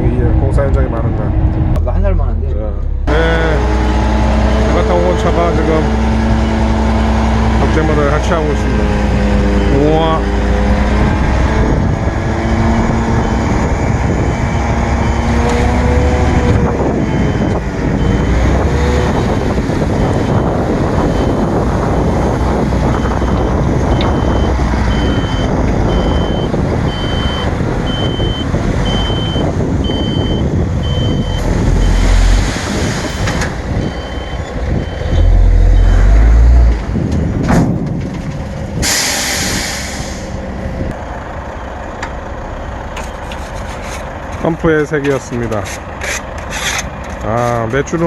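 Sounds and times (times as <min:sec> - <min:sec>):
dump truck engine running: 0:00.0 - 0:48.0
reversing alarm beeping: 0:16.1 - 0:18.4, 0:22.9 - 0:32.3, 0:33.8 - 0:36.6
air brake hiss: 0:38.8 - 0:40.4.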